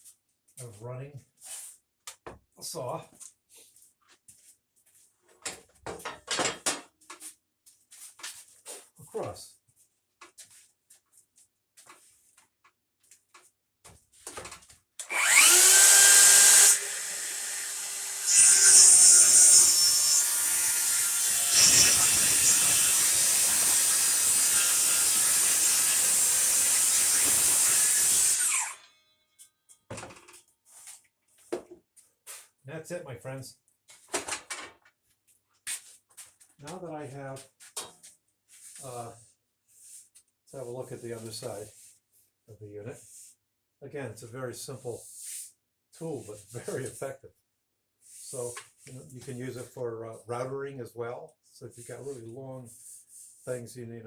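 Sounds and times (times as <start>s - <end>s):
saw knocking and scraping on wood: 14.3s - 28.8s.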